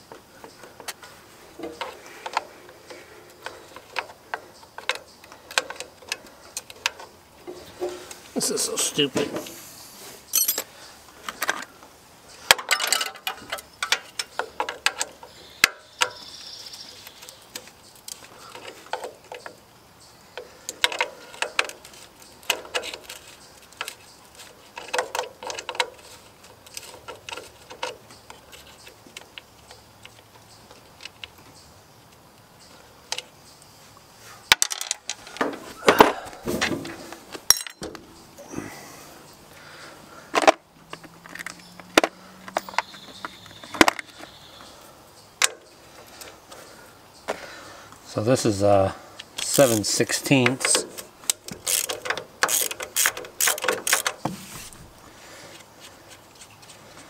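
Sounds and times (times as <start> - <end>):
metal hand tools clinking: 10.3 - 10.7, 12.5 - 15.0, 37.4 - 38.0.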